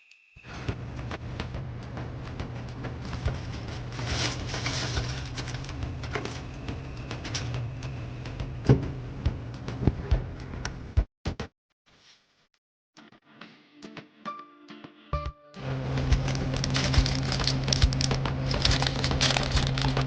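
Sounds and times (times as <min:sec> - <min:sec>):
steady low hum: 0:00.5 - 0:11.0, 0:15.6 - 0:20.0
packaging rustling: 0:03.1 - 0:06.6, 0:16.1 - 0:20.0
packaging clicks and knocks: 0:16.1 - 0:20.0.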